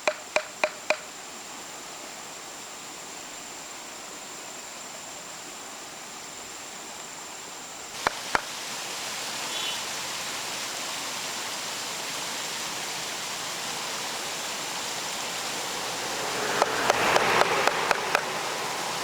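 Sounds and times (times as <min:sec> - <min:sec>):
sharp chopping knocks: 0:00.0 - 0:01.0, 0:16.6 - 0:18.3
rushing hiss: 0:00.2 - 0:19.0.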